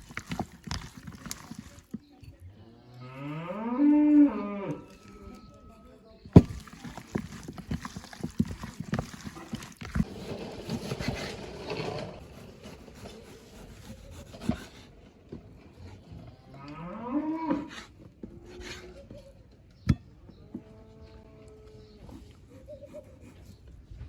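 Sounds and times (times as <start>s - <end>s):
cow mooing: 3.0s - 4.9s
knocks and rustling: 6.3s - 12.2s.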